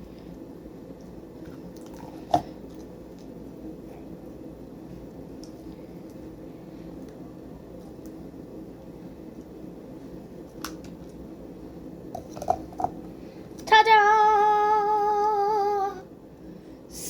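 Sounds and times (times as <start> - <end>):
girl singing a held note: 13.7 - 16.1.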